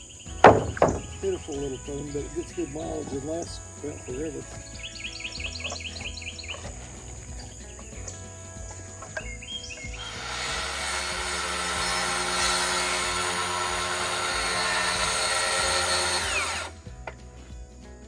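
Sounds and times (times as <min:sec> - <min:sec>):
power tool running and winding down: 0:09.9 - 0:16.8.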